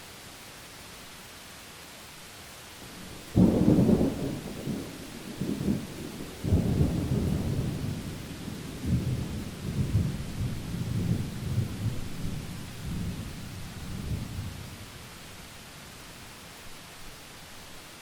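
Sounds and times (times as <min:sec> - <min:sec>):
rain hissing: 0:00.0 - 0:18.0
thunderclap rumbling: 0:03.0 - 0:13.3.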